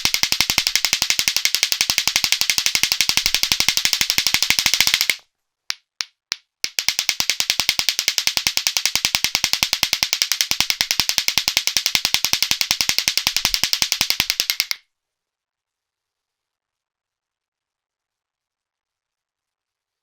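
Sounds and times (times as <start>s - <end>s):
clacker balls knocking together: 0.0s - 5.2s, 5.8s - 14.8s.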